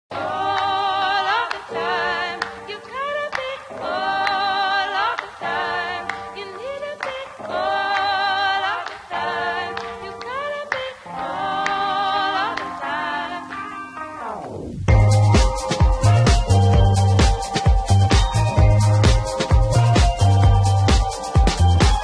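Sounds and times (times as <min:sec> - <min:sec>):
person singing with harmonies: 0:00.1 - 0:14.4.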